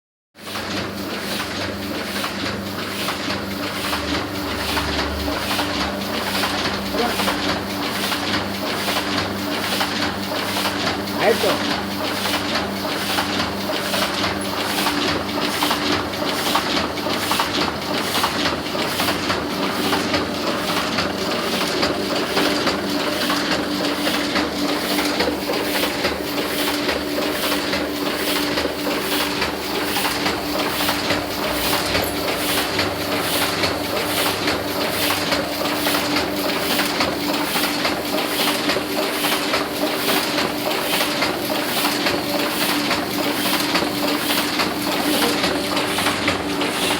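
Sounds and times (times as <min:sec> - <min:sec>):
printing press rhythmic clatter: 0:00.4 - 0:46.9
machine hum: 0:03.6 - 0:08.8, 0:28.0 - 0:35.8.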